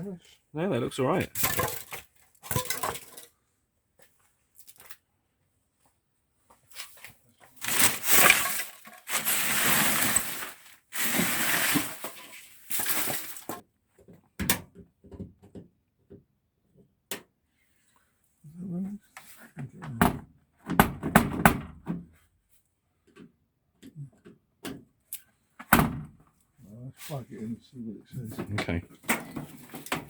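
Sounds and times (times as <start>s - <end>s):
washing machine scraping on floor: 7.6s - 13.6s.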